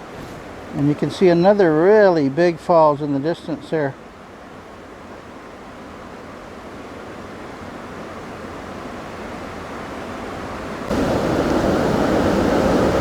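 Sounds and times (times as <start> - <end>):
distant waterfall rushing: 0.0 - 13.0.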